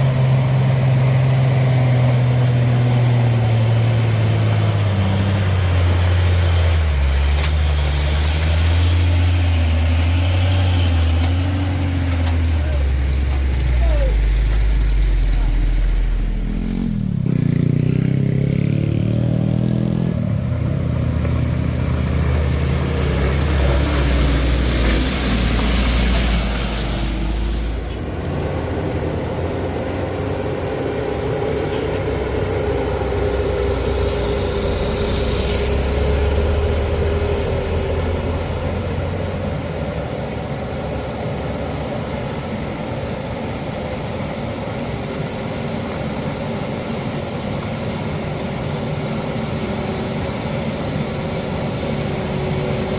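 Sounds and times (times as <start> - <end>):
diesel engine under load: 0.0 - 52.9
steady whine: 20.3 - 52.9.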